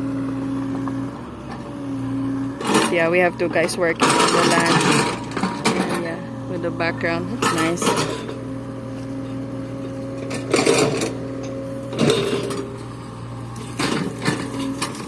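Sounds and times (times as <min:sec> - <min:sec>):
diesel engine running: 0:00.0 - 0:15.0
crashing and scraping: 0:11.9 - 0:15.0.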